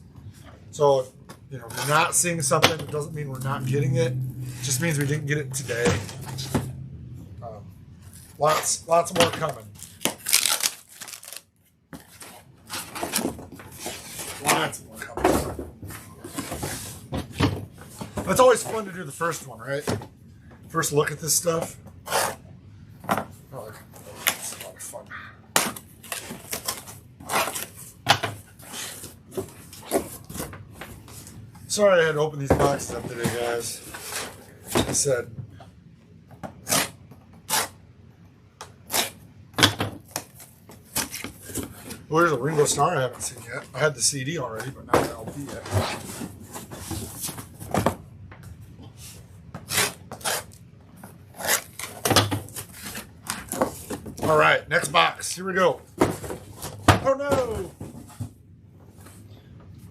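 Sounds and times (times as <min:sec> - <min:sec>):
record sleeves being flipped through: 0:09.5 - 0:14.7.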